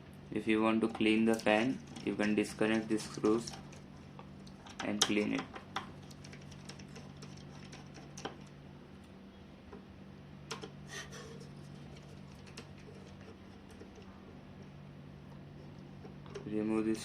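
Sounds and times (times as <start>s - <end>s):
steady low hum: 0.0s - 17.0s
laptop parts clicking and tapping: 10.5s - 10.8s.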